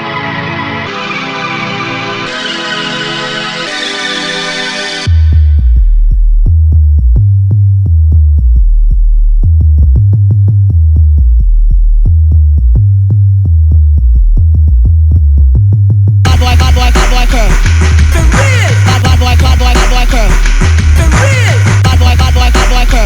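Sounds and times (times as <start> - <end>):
bright sample layer: 0.0 - 5.2
chopped breakbeat drums: 5.1 - 23.0
deep sub-bass line: 5.1 - 23.0.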